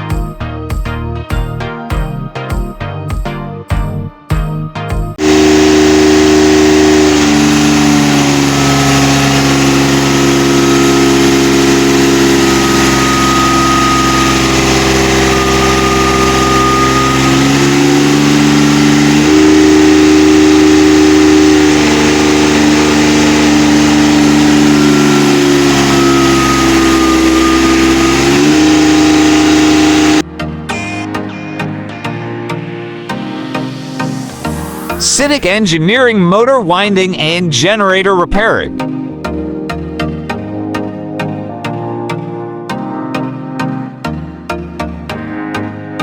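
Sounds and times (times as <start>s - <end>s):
diesel generator running: 5.2s - 35.6s.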